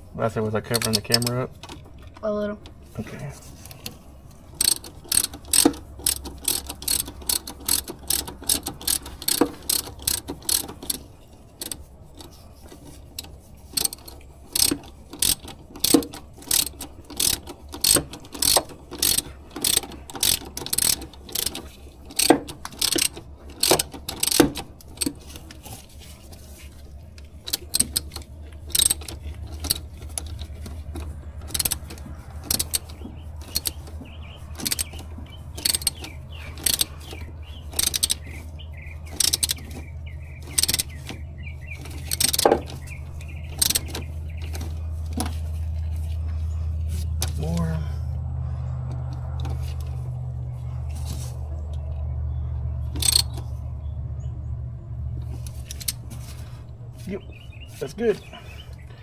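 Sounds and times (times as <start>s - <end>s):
ratchet wrench clicking: 0.7s - 1.8s, 3.7s - 12.3s, 13.2s - 25.6s, 27.4s - 41.2s, 41.8s - 44.8s, 52.9s - 53.5s, 55.2s - 56.2s.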